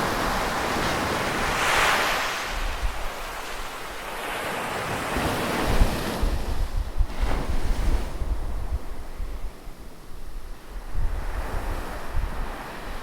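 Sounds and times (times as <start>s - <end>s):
ocean wave breaking: 0.0s - 8.5s
wind buffeting microphone: 0.0s - 13.0s.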